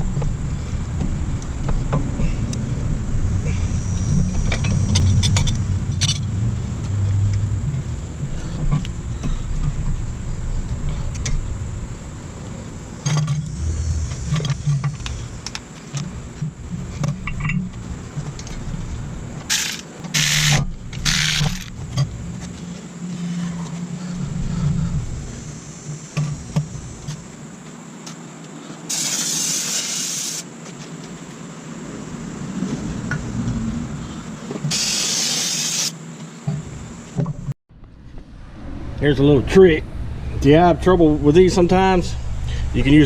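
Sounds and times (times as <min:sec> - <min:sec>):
low steady rumble: 0:00.0 - 0:19.5, 0:20.2 - 0:27.1, 0:37.7 - 0:43.0
short hissing bursts: 0:28.9 - 0:30.5, 0:34.7 - 0:36.0.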